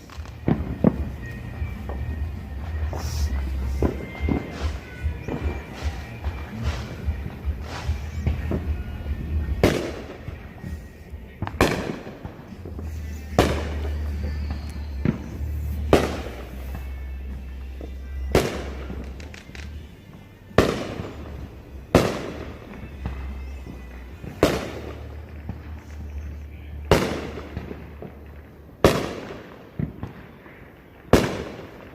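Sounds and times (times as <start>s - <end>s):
fireworks bangs: 0.0s - 31.9s.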